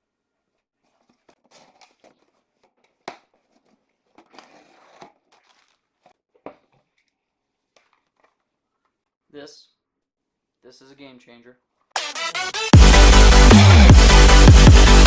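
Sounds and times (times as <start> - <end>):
rustling and crinkling handling noises: 0.3 - 9.1.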